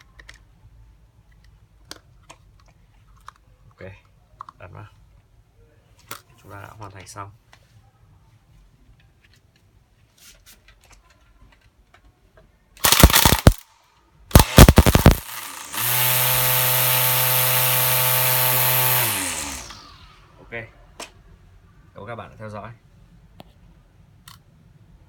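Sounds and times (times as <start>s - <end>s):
string trimmer whirring: 14.3s - 20.4s.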